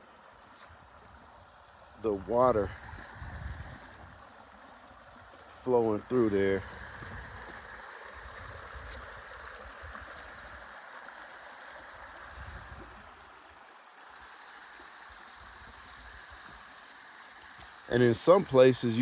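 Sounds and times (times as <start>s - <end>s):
creek flowing over rocks: 0.0s - 19.0s.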